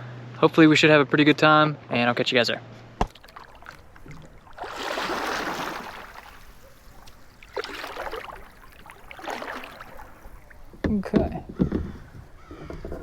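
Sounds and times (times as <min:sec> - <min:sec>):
paddle splashing in water: 0:03.0 - 0:13.0.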